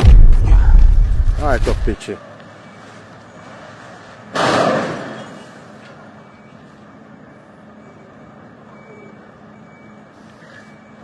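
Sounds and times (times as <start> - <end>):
loud slam: 0.0 - 2.0
steady background hum: 0.0 - 11.0.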